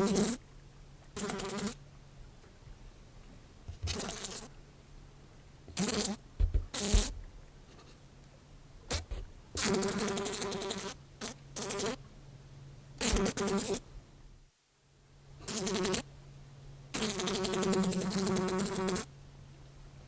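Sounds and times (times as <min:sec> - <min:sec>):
fly buzzing: 0:03.7 - 0:04.5, 0:05.8 - 0:07.2, 0:08.9 - 0:12.0, 0:13.0 - 0:13.8
low bumps: 0:06.4 - 0:07.8.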